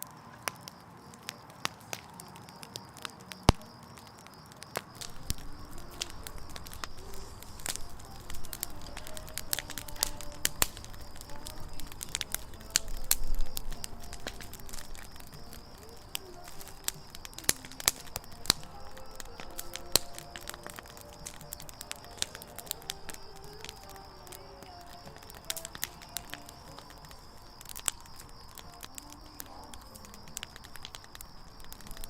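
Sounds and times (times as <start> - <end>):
campfire crackling and popping: 0.0 - 32.0
faint whistling tones: 4.7 - 32.0.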